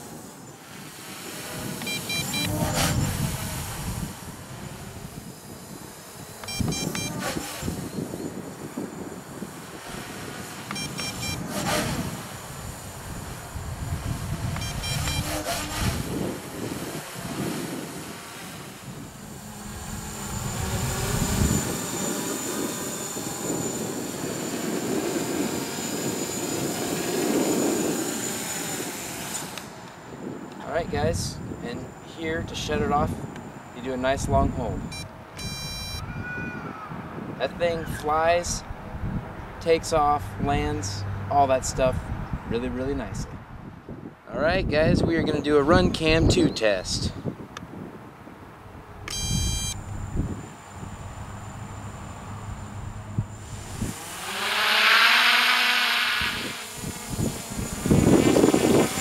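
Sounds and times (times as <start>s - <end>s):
quadcopter motors buzzing: 0.0s - 43.4s, 48.8s - 59.0s
wind buffeting microphone: 0.0s - 54.8s, 56.0s - 59.0s
high electronic beeps: 1.8s - 2.6s, 6.4s - 7.2s, 10.7s - 11.5s, 14.6s - 15.3s, 34.9s - 36.2s, 49.1s - 49.9s.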